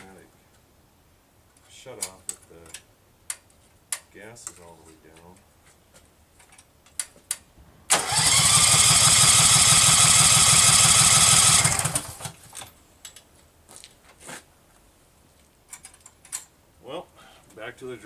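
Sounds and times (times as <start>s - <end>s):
engine cranking with starter whine: 7.9s - 12.5s.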